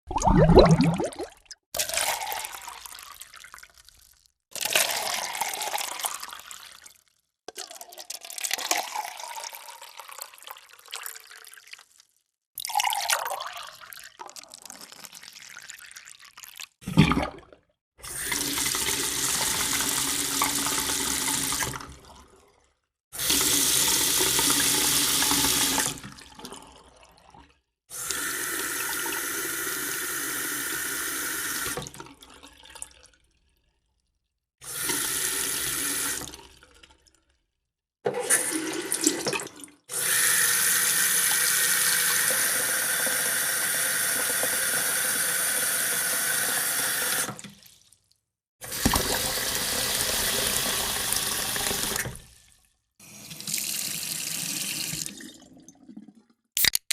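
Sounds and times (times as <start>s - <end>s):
water running and pouring: 0.1s - 6.9s, 48.7s - 52.2s.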